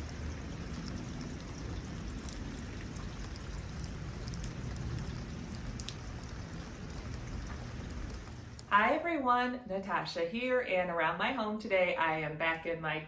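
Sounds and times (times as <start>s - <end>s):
raindrops ticking: 0.0s - 9.0s
steady rain falling: 0.0s - 9.0s.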